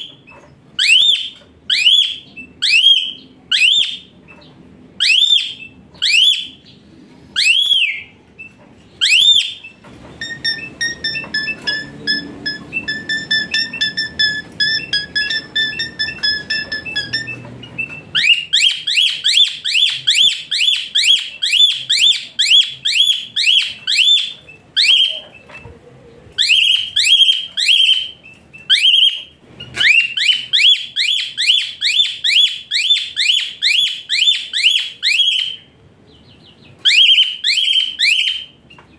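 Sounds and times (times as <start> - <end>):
bird chattering notes: 7.6 - 25.5.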